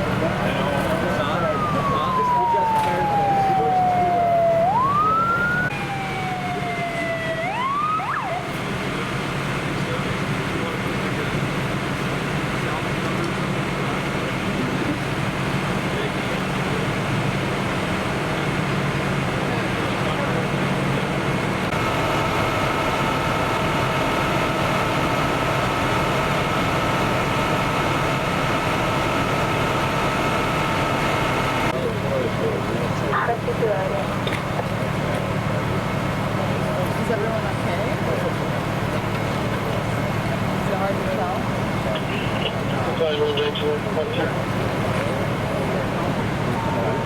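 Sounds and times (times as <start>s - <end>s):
low vehicle rumble: 0.0s - 47.0s
electronic siren bursts: 1.1s - 8.5s.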